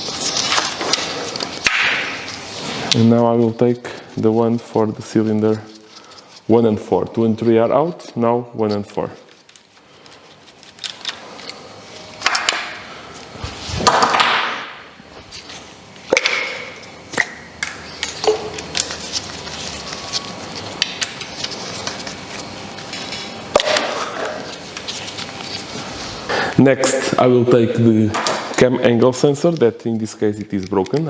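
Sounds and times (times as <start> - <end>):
hand tools clicking and scraping: 8.7 - 12.6.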